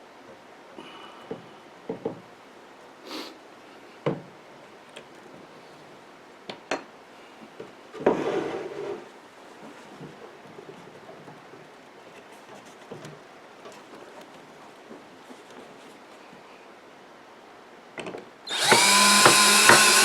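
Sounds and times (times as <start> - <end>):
wood rubbing: 18.5 - 20.0
wood knocking against wood: 18.7 - 20.0.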